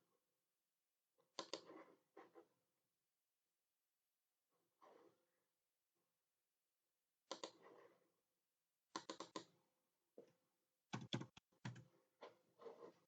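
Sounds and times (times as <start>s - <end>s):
mouse clicks: 1.3s - 1.8s, 7.3s - 7.7s, 8.9s - 9.6s
keyboard keystrokes: 10.9s - 11.8s.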